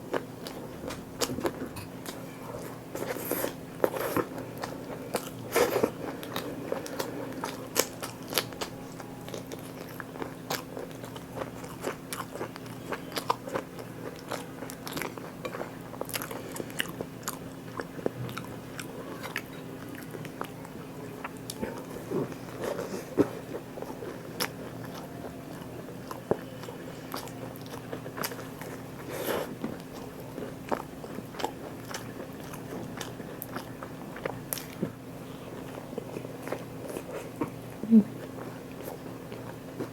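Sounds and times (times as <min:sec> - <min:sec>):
low steady hum: 0:00.0 - 0:39.9
person chewing crunchy food: 0:00.0 - 0:39.9.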